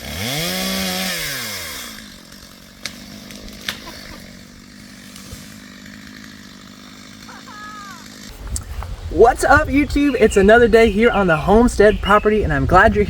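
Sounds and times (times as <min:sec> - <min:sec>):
chainsaw engine revving: 0:00.0 - 0:08.4.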